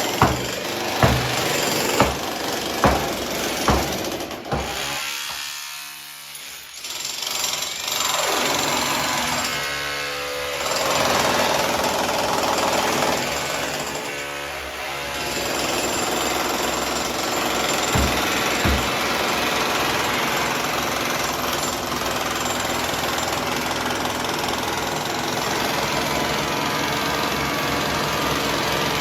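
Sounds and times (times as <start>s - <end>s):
hammer blows: 0.0s - 5.4s, 17.9s - 19.4s
demolition hammer rattling: 0.0s - 5.5s, 17.4s - 19.6s.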